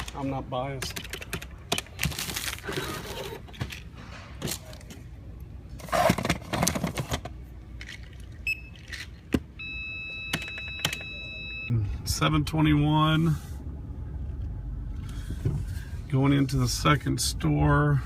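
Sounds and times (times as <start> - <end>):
boxes rattling and clattering: 5.8 - 8.1
steady electronic beep tone: 9.6 - 11.8.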